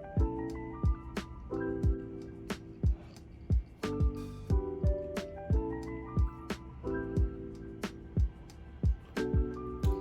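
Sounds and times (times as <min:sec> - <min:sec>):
soft keyboard chords: 0:00.0 - 0:10.0
kick drums: 0:00.2 - 0:01.1, 0:01.8 - 0:02.1, 0:02.8 - 0:06.5, 0:07.2 - 0:07.5, 0:08.1 - 0:10.0.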